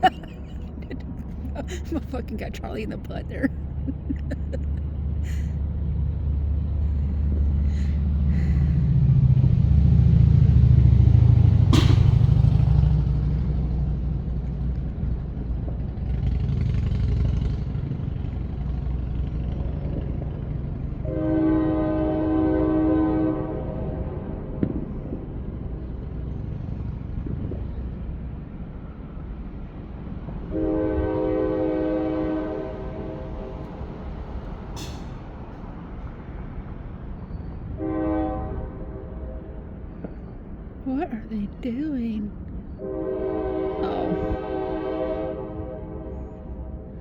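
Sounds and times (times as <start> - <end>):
multi-tone horn blowing: 21.0 - 24.1, 30.5 - 33.4, 37.8 - 39.5, 42.8 - 46.4.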